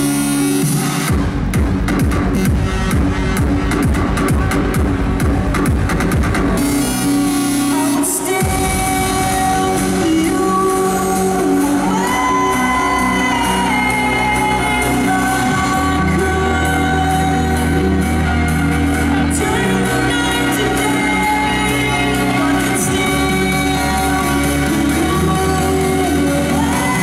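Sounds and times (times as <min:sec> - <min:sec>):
deep bass: 0:00.0 - 0:27.0
trance music over sound system: 0:00.0 - 0:27.0
person singing: 0:07.5 - 0:27.0.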